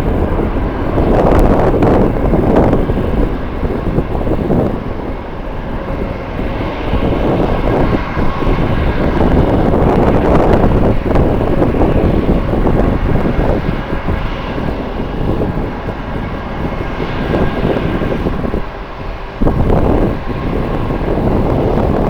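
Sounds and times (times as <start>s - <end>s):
jet airliner engine noise: 0.0s - 22.0s
wind buffeting microphone: 0.0s - 22.0s.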